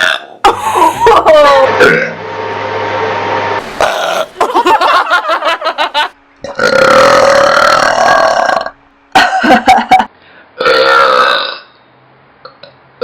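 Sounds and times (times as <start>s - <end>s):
woman belching: 6.5s - 9.4s, 10.6s - 11.6s.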